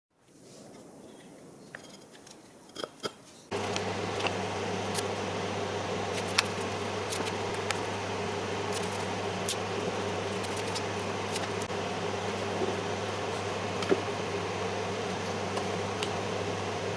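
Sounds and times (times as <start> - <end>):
electric router motor running: 3.5 - 16.9.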